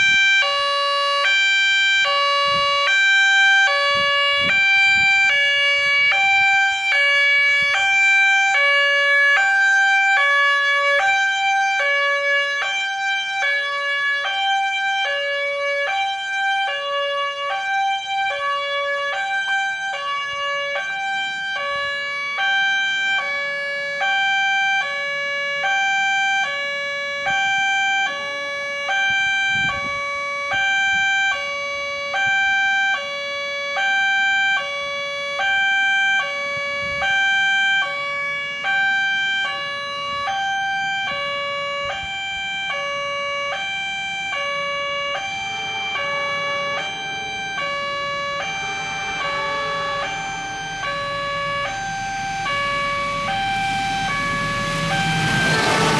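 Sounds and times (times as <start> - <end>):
level crossing two-tone siren: 0.0 - 55.9
rushing noise: 38.4 - 55.9.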